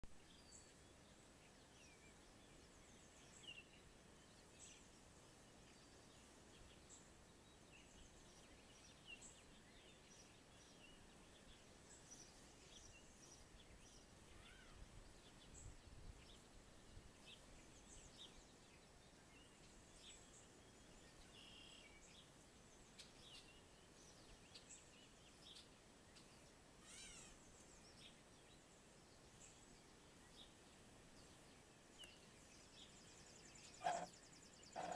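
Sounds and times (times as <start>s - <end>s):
birdsong chirps and whistles: 17.7s - 22.2s, 31.2s - 34.9s.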